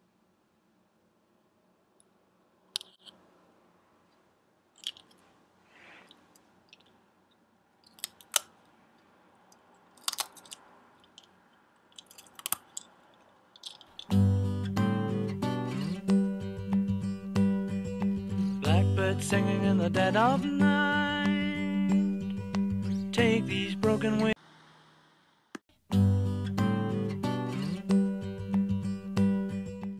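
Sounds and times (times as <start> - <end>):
cracker crunching bites: 10.0 - 10.6, 12.0 - 12.9.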